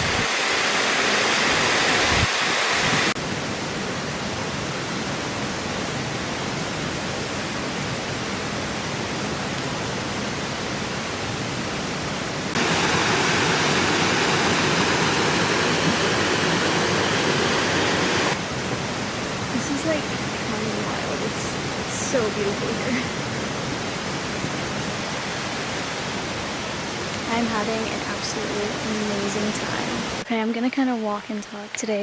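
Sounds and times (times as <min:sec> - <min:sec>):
waterfall rushing: 0:00.0 - 0:30.2.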